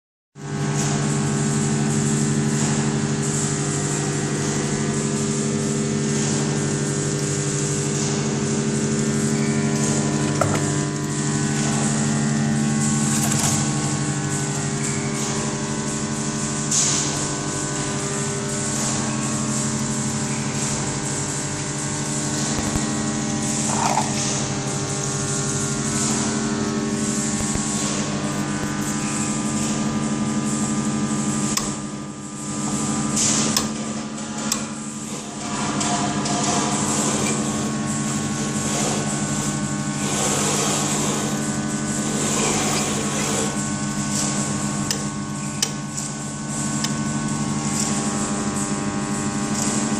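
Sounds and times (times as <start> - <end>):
rotary tool motor whine: 36.5 - 43.6.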